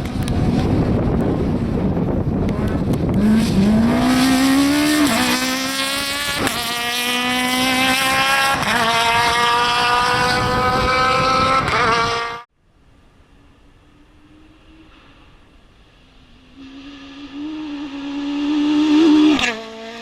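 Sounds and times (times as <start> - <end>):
rally car engine at full throttle: 0.0 - 12.5, 13.8 - 20.0.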